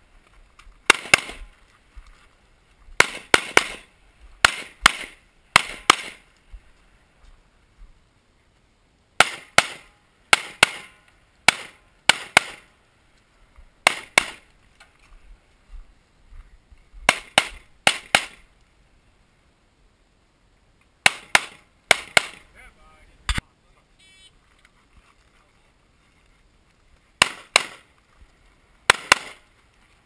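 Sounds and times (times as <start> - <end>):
pistol shots in pairs: 0.9 - 1.4, 3.0 - 6.2, 9.2 - 10.9, 11.5 - 12.7, 13.8 - 14.4, 17.1 - 18.4, 21.0 - 22.5, 27.2 - 27.9, 28.9 - 29.4.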